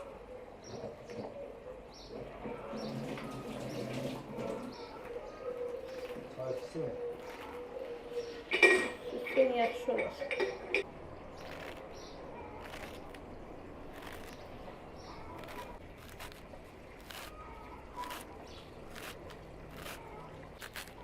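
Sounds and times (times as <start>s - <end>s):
faint bird chirps: 0.0s - 9.7s.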